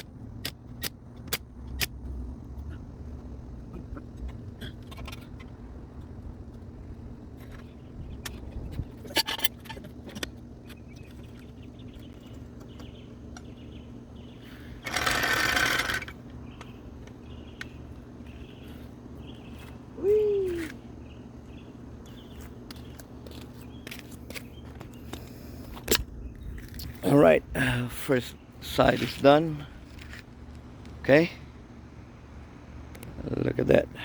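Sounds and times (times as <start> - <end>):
power wrench running: 14.6 - 16.2.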